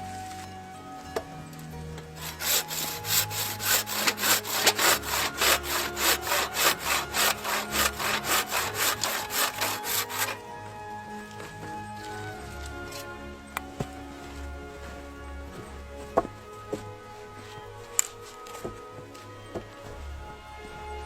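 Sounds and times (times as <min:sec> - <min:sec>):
hand saw cutting wood: 0:02.1 - 0:10.5.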